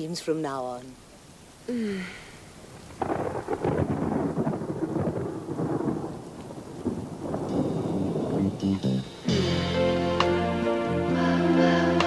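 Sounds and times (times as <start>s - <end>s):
woman speaking: 0.0s - 1.0s
loud rough rumbling: 6.8s - 9.3s.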